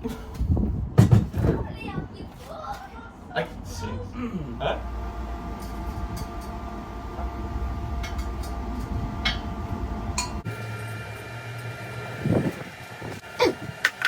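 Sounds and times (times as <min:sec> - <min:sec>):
low machine hum: 0:04.1 - 0:14.0.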